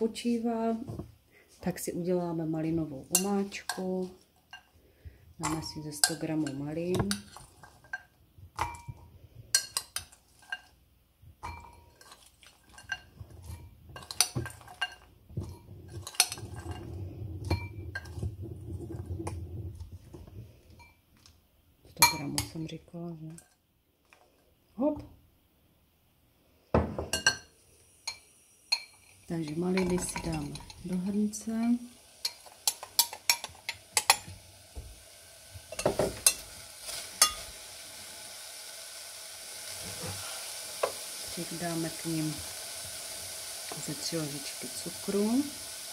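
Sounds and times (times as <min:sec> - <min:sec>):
steady faint hiss: 0:00.0 - 0:45.9
dishes and glassware clinking: 0:07.8 - 0:10.7, 0:11.4 - 0:18.3, 0:26.8 - 0:27.5, 0:35.7 - 0:36.4.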